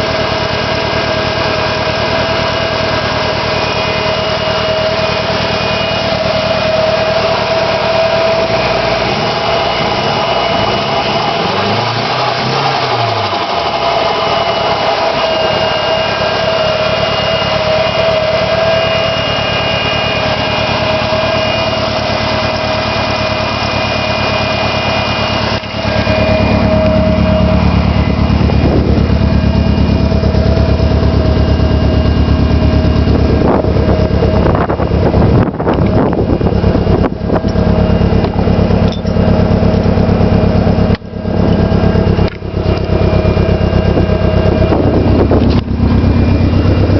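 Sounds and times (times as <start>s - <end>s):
car engine misfiring: 0.0s - 46.9s.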